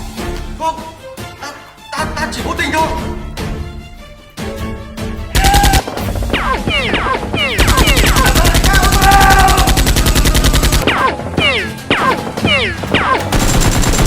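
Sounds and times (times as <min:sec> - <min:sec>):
automatic gunfire: 0:05.4 - 0:11.1, 0:13.0 - 0:14.0.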